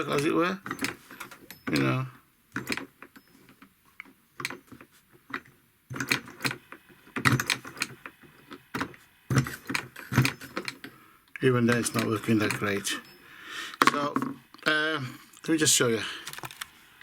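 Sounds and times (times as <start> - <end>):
solenoid engine clicks and knocks: 0.6 - 11.0, 11.7 - 12.9.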